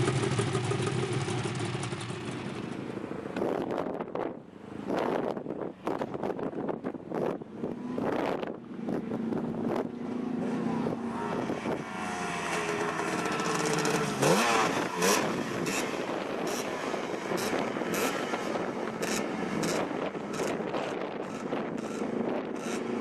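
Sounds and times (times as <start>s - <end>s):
two-stroke motorcycle engine revving: 0.0s - 2.5s, 7.2s - 23.0s.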